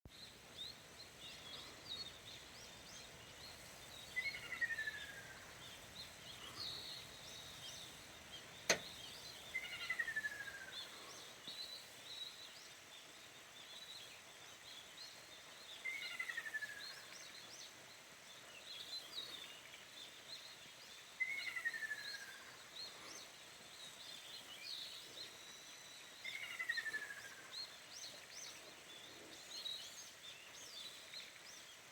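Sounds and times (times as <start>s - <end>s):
birds chirping: 0.1s - 31.9s
sharp click: 8.7s - 8.9s.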